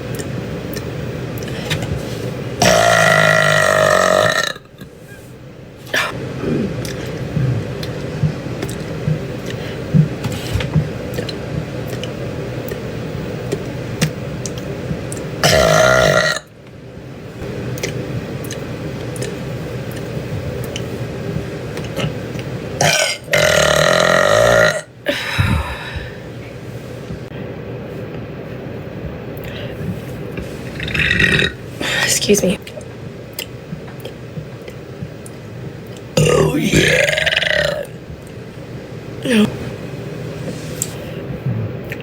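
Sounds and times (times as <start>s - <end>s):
woman burping: 2.6s - 4.8s, 15.4s - 16.5s, 22.8s - 25.9s, 36.2s - 37.9s, 39.2s - 39.5s.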